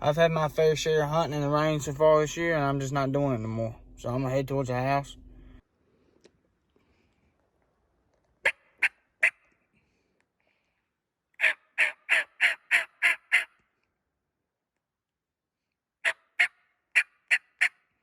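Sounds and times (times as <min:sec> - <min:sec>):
turkey yelping: 0:11.4 - 0:13.5.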